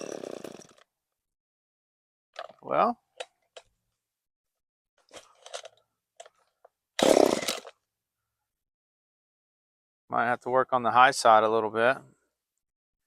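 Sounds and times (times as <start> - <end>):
chainsaw firing briefly: 7.0 - 7.7.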